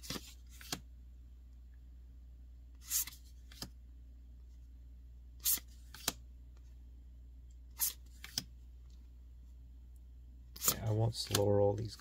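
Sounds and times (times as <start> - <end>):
cards swishing and tapping down: 0.0 - 0.9, 2.8 - 3.8, 5.4 - 6.2, 7.8 - 8.5, 10.6 - 11.6
steady low hum: 0.0 - 12.0.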